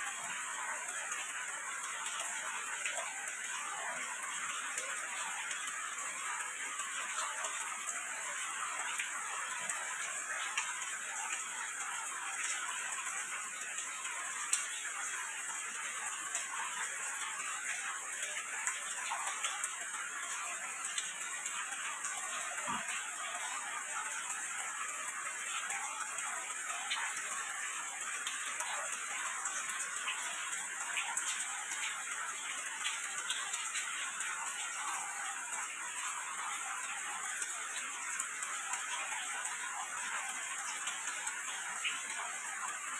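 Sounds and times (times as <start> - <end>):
raindrops ticking on surfaces: 0.0 - 42.9
steady rain hiss: 0.0 - 42.9.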